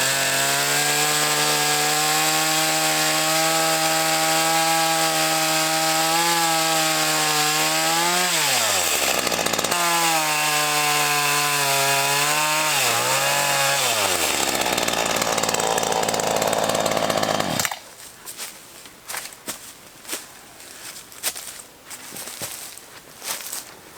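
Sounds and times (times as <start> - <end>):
chainsaw cutting tree trunk: 0.0 - 17.8.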